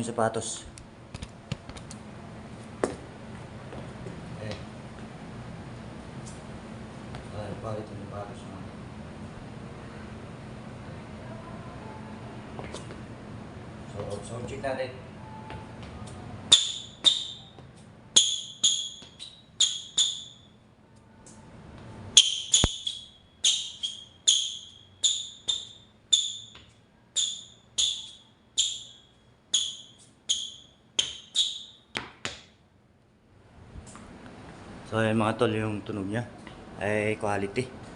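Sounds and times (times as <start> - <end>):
shoes squeaking on floor: 15.4 - 20.6, 22.2 - 32.5.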